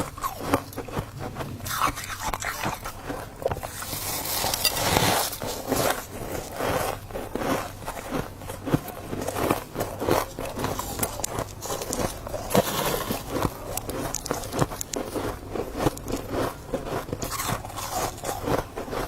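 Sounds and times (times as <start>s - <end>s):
frost being chewed: 0.0s - 19.0s.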